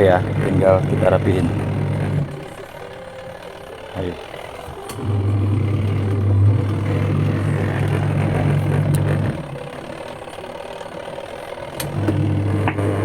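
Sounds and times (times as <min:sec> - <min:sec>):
washing machine motor humming: 0:00.0 - 0:13.0.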